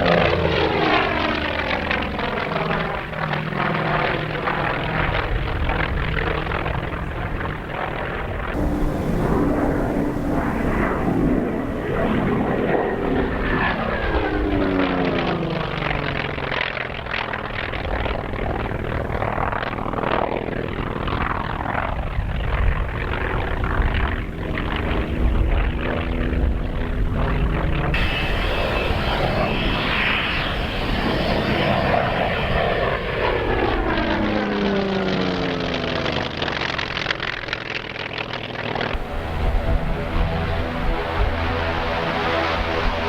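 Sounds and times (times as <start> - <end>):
propeller airplane engine drone: 0.0 - 43.0.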